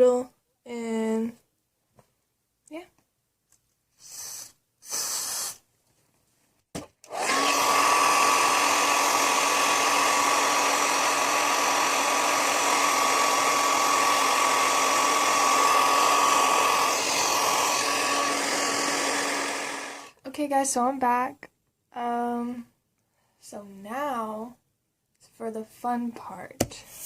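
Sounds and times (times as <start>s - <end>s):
aerosol spray hissing: 4.0s - 5.6s
hair dryer running: 7.1s - 20.2s.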